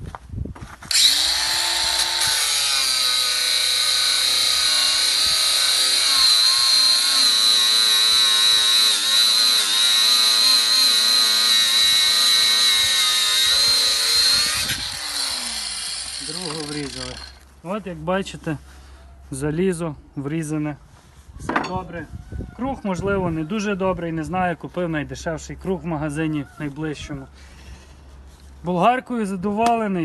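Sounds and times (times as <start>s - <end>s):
angle grinder cutting steel: 0.9s - 17.5s.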